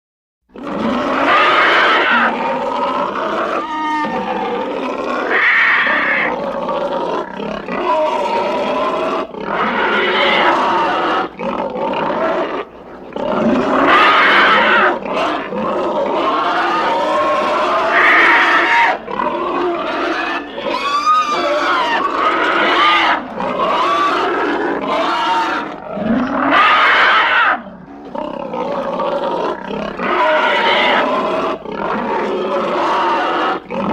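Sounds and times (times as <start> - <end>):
monster roars: 0.6 - 12.6.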